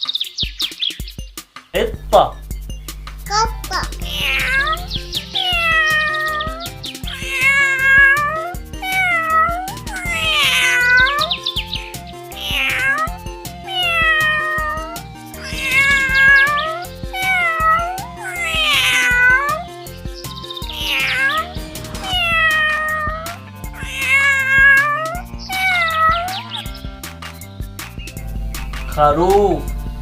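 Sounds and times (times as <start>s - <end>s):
children's background music: 3.2s - 30.0s
cat meowing: 3.3s - 11.4s, 12.3s - 19.7s, 20.6s - 26.6s.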